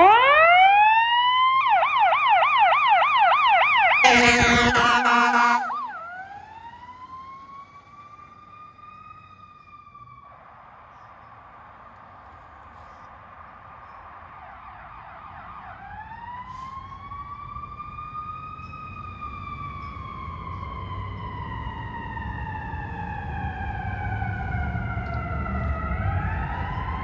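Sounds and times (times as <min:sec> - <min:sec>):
fire truck siren: 0:00.0 - 0:11.2, 0:14.3 - 0:27.0
truck engine rumbling: 0:04.0 - 0:09.4.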